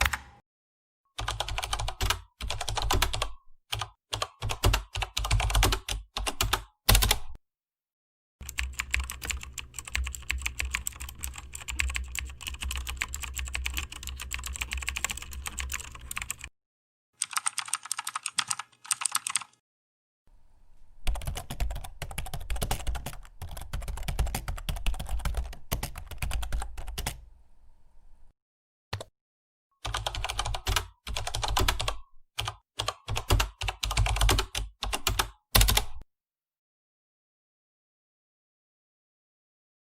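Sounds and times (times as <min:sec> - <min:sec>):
keyboard typing: 0:00.0 - 0:00.4, 0:01.2 - 0:07.4, 0:08.4 - 0:16.5, 0:17.2 - 0:19.6, 0:21.0 - 0:27.2, 0:29.8 - 0:36.0.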